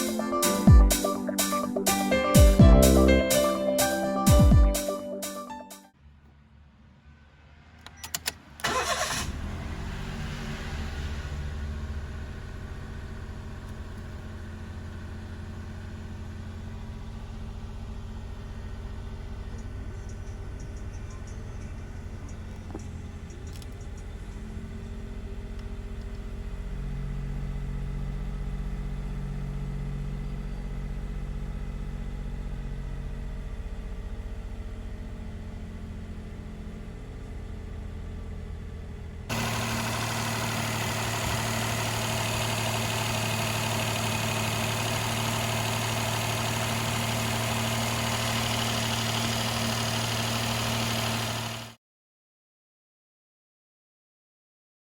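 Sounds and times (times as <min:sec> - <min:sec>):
car engine idling: 0:08.2 - 0:51.8.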